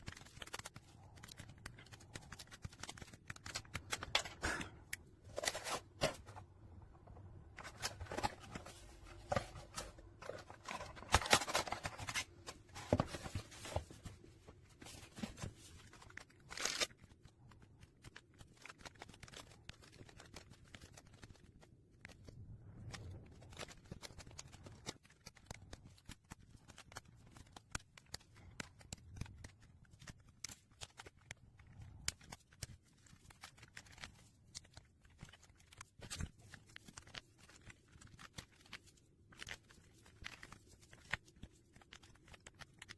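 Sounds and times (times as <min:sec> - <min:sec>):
packaging rustling: 0:00.0 - 0:42.9
plastic parts clicking: 0:07.0 - 0:13.8.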